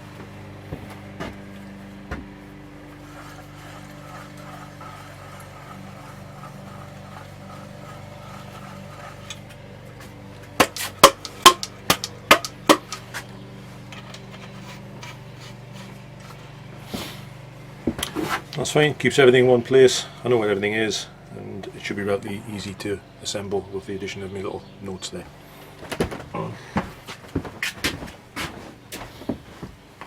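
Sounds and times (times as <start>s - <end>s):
steady low hum: 0.0s - 30.0s
metal parts knocking together: 10.6s - 13.1s.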